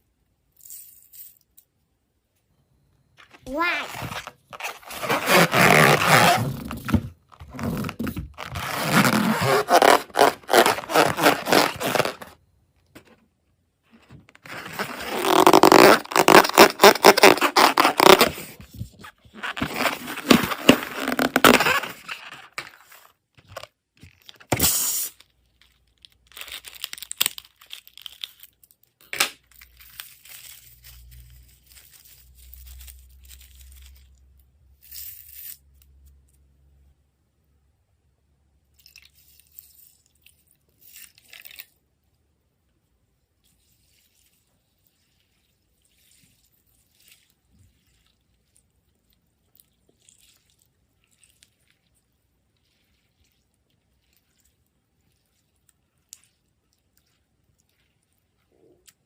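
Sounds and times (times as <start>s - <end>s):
slime scraping and squishing: 3.4s - 12.4s, 14.4s - 24.8s, 43.4s - 59.0s.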